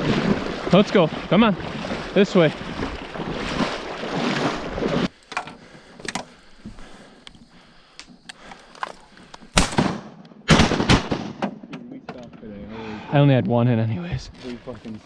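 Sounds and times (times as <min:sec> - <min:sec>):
shotgun blasts: 0:09.6 - 0:11.7.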